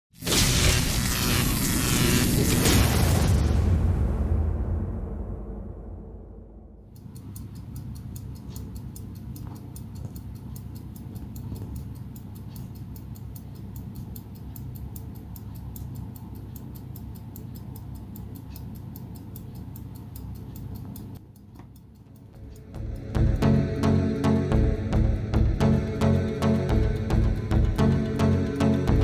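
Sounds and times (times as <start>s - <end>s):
low steady rumble: 3.5s - 6.9s, 22.4s - 29.0s
pocket watch ticking: 6.9s - 29.0s.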